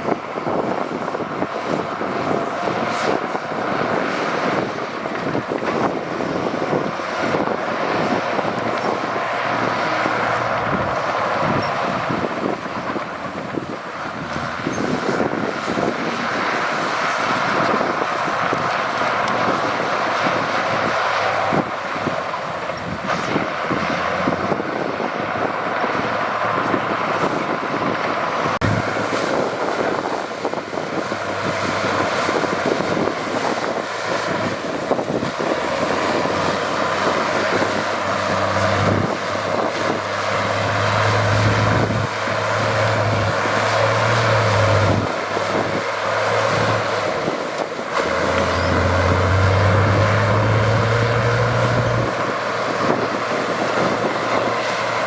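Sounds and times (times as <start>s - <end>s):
diesel engine of heavy machinery: 0.0s - 55.0s.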